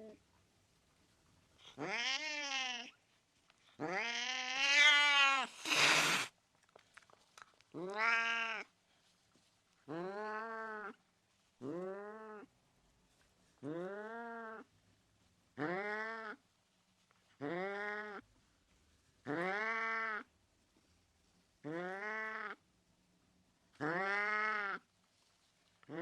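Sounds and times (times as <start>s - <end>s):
cat meowing angrily: 1.8s - 2.9s, 3.8s - 6.3s, 7.9s - 8.6s
cat hissing: 3.9s - 6.3s.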